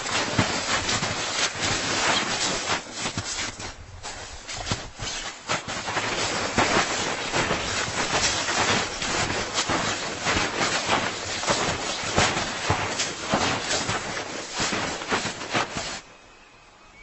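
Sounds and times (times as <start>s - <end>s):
close rustling: 0.0s - 16.0s
irregular crackles: 0.0s - 16.0s.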